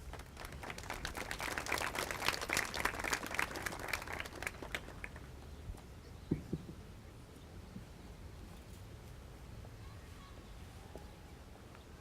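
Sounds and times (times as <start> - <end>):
audience applauding: 0.0 - 5.3.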